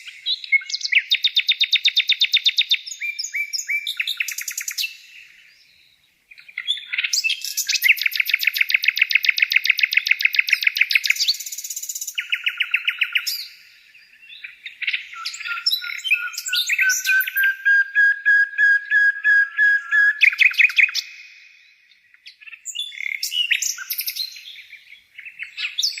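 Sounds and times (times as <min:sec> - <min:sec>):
songbird trilling and chirping: 0:00.0 - 0:26.0.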